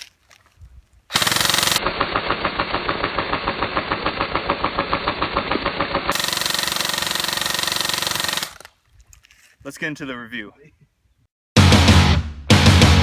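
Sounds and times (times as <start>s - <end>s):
airsoft gun firing full auto: 1.1s - 8.7s.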